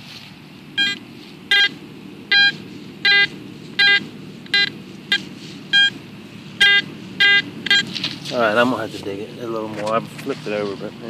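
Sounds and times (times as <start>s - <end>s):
metal detector beeping: 0.8s - 6.0s, 6.6s - 8.0s.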